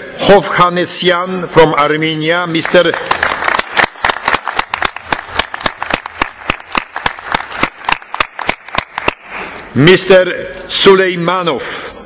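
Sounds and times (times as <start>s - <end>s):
scattered applause: 2.6s - 9.3s.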